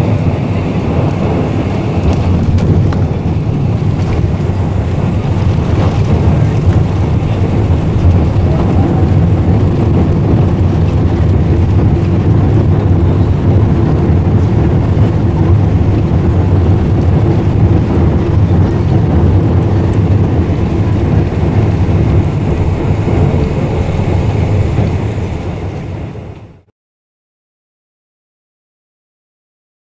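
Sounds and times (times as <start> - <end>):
jet engine cabin rumble: 0.0 - 26.7.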